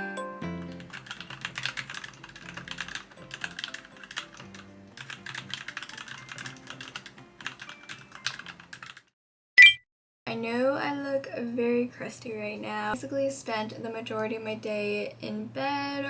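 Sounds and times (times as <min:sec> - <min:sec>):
rapid mechanical keyboard typing: 0:00.6 - 0:09.1.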